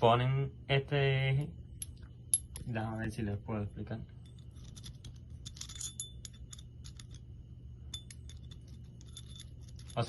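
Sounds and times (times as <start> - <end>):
metal parts clinking: 4.1 - 10.0.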